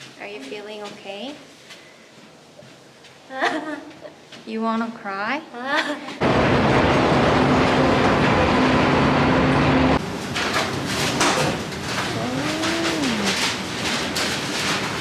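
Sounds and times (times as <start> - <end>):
vehicle noise with low hum: 6.2 - 13.2.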